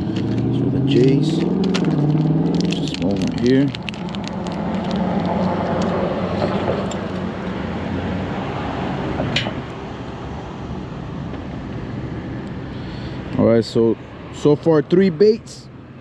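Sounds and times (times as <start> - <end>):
passing motor traffic: 0.0 - 16.0.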